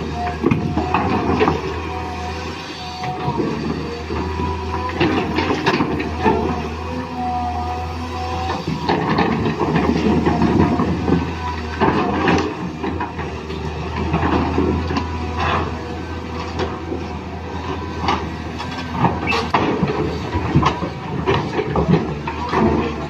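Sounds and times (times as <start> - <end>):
toy electric motors humming: 0.4 - 13.5.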